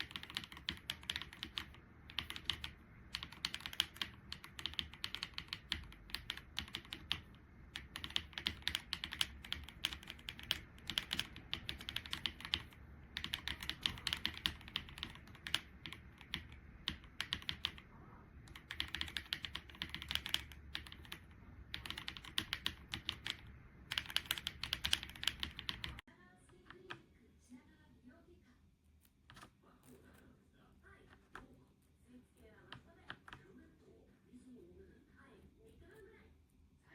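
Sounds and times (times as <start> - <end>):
mechanical keyboard typing: 0.0 - 27.0.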